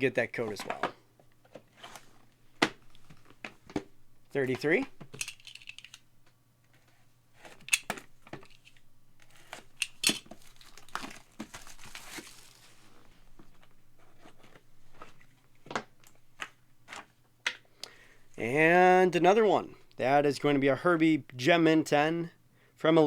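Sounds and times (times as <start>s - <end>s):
plastic packaging crinkling and tearing: 8.5s - 13.0s.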